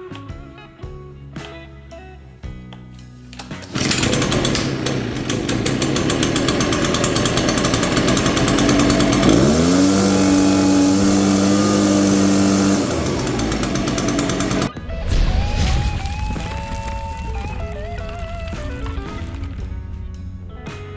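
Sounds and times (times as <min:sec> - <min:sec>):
leaf blower running: 0:03.4 - 0:14.7.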